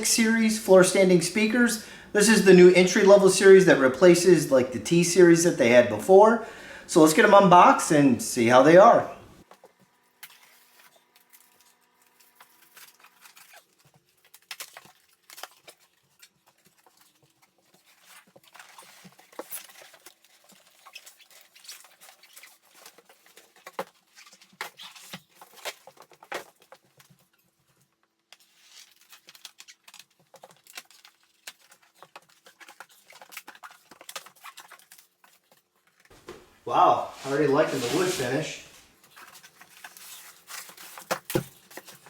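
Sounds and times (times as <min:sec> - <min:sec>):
cardboard and packing rustling: 0:09.4 - 0:42.0
sharp knocks and tears: 0:39.2 - 0:42.0.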